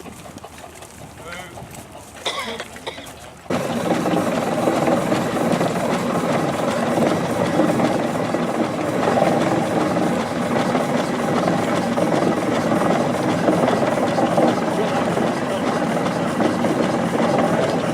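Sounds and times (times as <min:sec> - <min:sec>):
engine running: 0:00.0 - 0:17.9.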